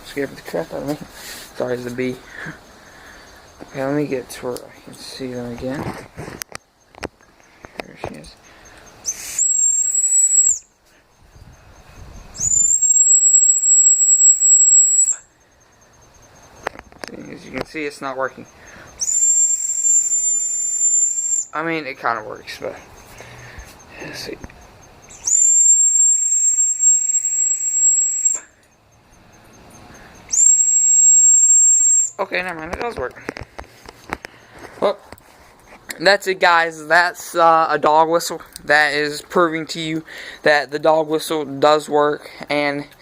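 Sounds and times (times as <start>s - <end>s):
dog whistle blasts: 9.1s - 10.7s, 12.4s - 15.3s, 19.0s - 21.5s, 25.1s - 28.6s, 30.3s - 32.2s.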